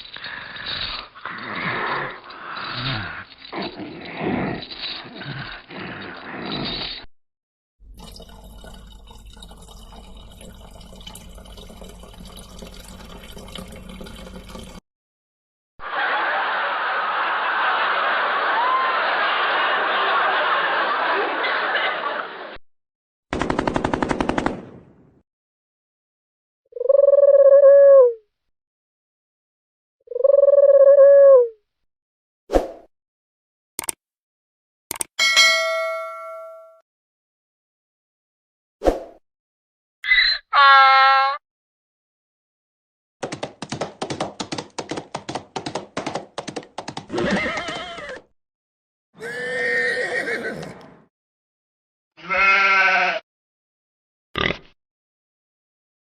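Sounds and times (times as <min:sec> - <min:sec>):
crowd laughing: 0:15.8 - 0:22.6, 0:47.1 - 0:48.2
machine-gun fire: 0:23.3 - 0:24.9
horse hooves clip-clop: 0:43.3 - 0:48.2
horse whinny: 0:49.2 - 0:50.9.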